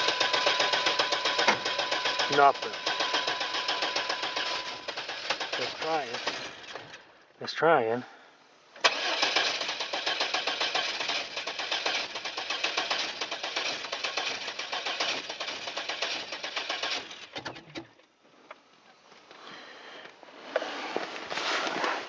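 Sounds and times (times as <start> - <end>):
engine cranking by starter: 0.0 - 7.0, 8.8 - 17.9.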